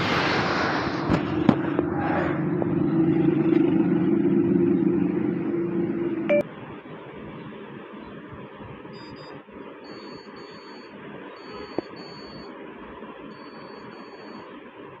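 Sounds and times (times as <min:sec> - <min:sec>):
high electronic tone: 0:05.7 - 0:06.5.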